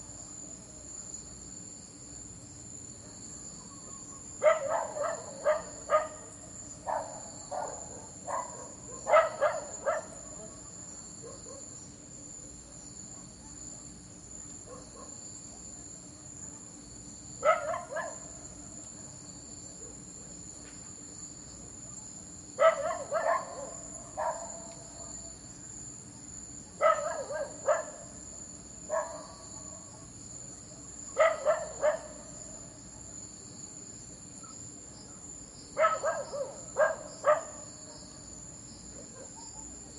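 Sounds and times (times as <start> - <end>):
crickets chirring: 0.0 - 39.9
dog barking: 3.0 - 11.8, 12.7 - 13.6, 14.7 - 15.2, 17.4 - 18.4, 22.6 - 25.3, 26.8 - 28.1, 28.9 - 30.1, 31.1 - 32.3, 35.8 - 38.2, 38.9 - 39.9.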